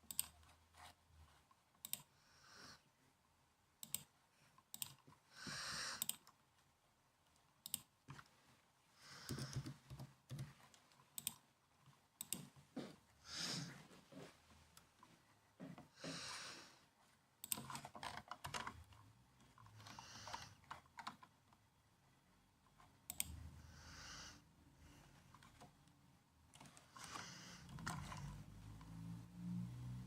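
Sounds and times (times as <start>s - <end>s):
typing on laptop keyboard: 0.0s - 0.5s, 9.2s - 11.4s, 17.4s - 19.0s, 19.8s - 21.4s.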